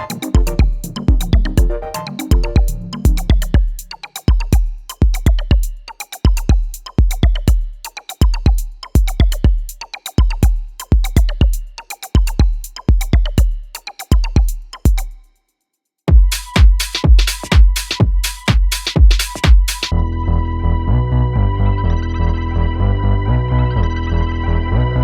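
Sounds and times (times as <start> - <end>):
electronic music with drum-machine beat: 0.0 - 15.4, 16.1 - 20.0.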